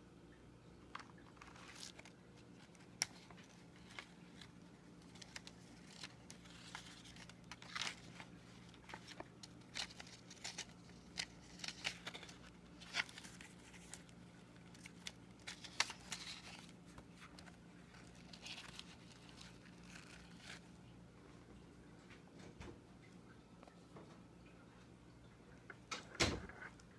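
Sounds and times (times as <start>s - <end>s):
paper rustling and crinkling: 0.9s - 20.9s.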